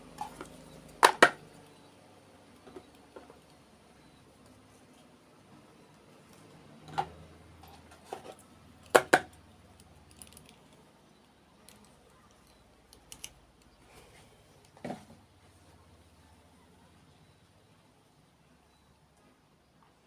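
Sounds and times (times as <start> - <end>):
plastic toy pieces clicking: 11.7 - 13.4.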